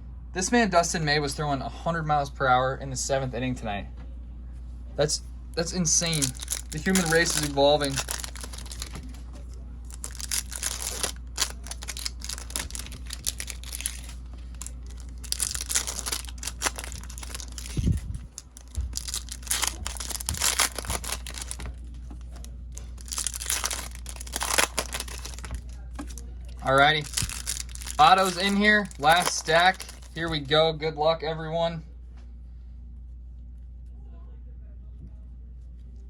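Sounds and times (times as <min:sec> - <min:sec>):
steady low hum: 0:00.0 - 0:36.0
foil wrappers crinkling and tearing: 0:05.6 - 0:30.4.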